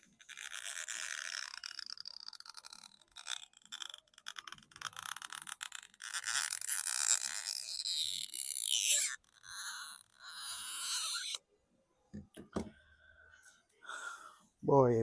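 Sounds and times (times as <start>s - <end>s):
tweezers scraping glue: 0.0s - 11.4s.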